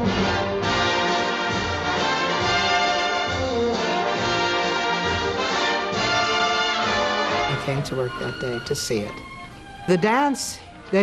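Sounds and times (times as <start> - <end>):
trombones playing chords: 0.0 - 8.3
trumpets playing chords: 0.0 - 9.2.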